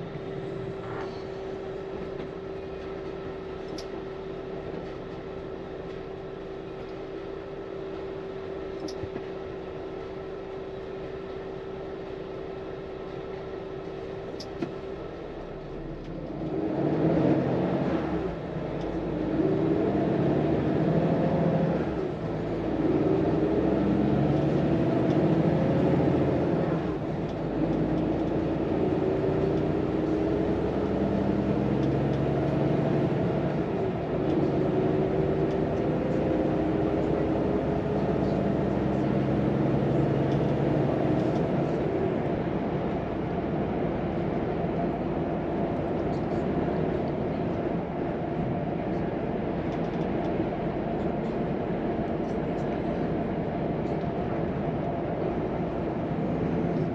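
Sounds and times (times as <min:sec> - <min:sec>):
truck diesel engine accelerating: 0:15.8 - 0:56.9.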